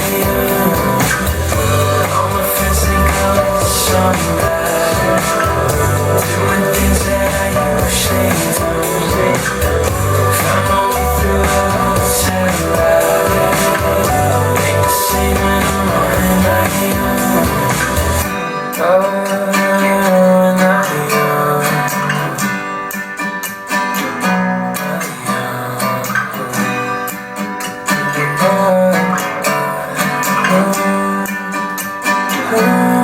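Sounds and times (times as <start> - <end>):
deep bass: 0.0 - 18.3
indie pop song with guitar: 0.0 - 33.0.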